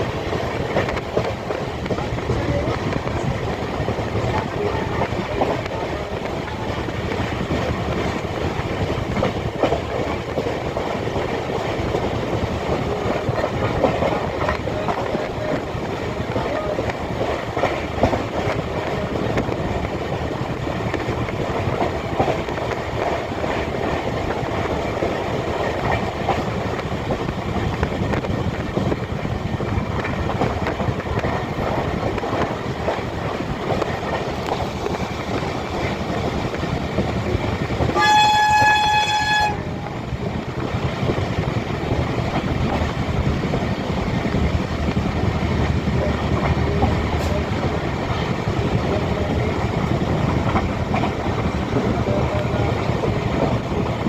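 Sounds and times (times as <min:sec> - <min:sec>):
train wheels clattering on track: 0:00.0 - 0:54.0
train horn: 0:37.9 - 0:40.0, 0:46.6 - 0:47.5.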